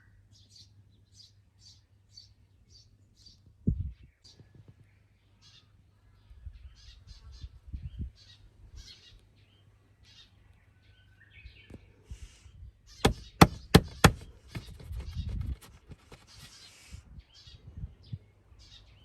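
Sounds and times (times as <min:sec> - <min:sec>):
sharp knocks: 0:13.1 - 0:16.2.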